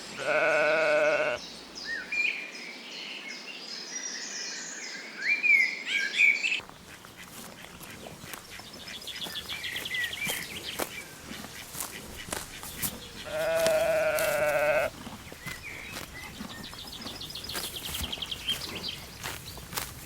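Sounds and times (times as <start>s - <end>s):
sheep bleating: 0.0s - 1.4s, 13.2s - 14.9s
birds twittering: 0.2s - 20.0s.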